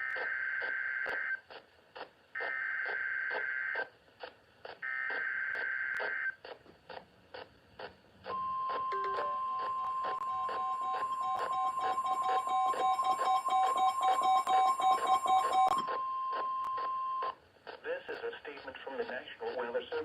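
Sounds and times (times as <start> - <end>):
steady alert tone: 8.4 - 15.8.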